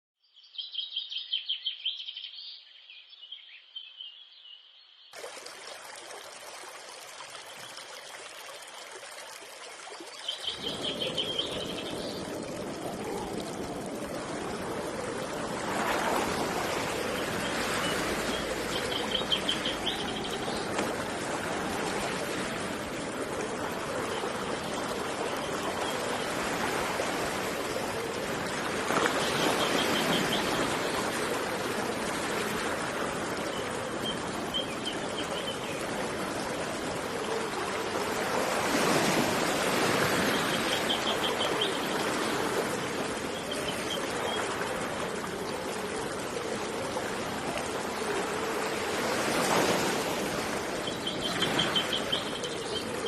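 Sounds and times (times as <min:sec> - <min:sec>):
river water running: 0:03.2 - 0:53.0.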